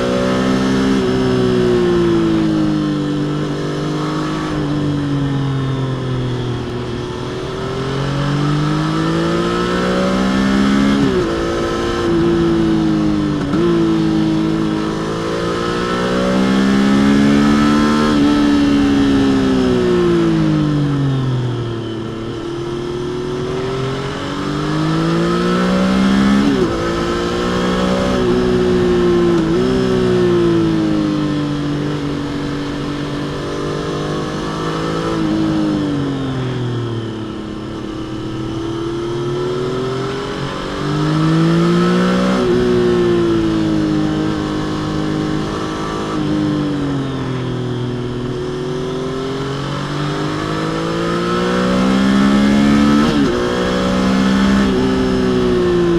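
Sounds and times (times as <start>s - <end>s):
motorcycle engine revving: 0.0s - 55.9s.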